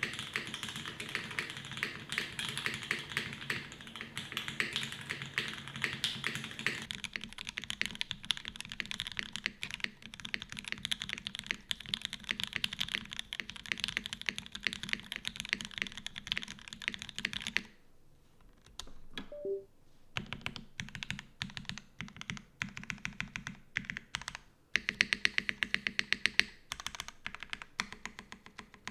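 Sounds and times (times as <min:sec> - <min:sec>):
mechanical keyboard typing: 0:00.0 - 0:17.6, 0:20.4 - 0:28.9
short faint tones: 0:19.4 - 0:19.7.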